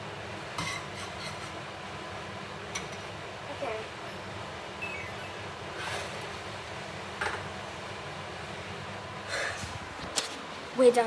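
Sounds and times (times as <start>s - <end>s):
steady kitchen hum: 0.0s - 11.0s.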